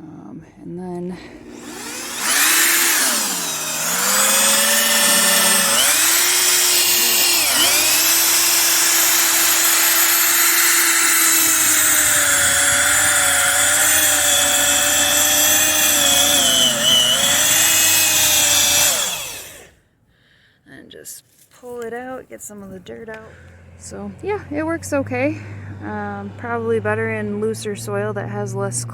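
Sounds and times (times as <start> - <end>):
power drill motor whining: 1.2 - 19.7.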